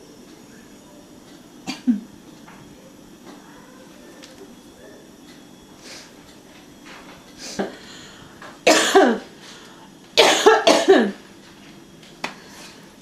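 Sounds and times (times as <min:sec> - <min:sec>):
person coughing: 0:01.6 - 0:02.1, 0:08.7 - 0:09.3, 0:10.2 - 0:11.2.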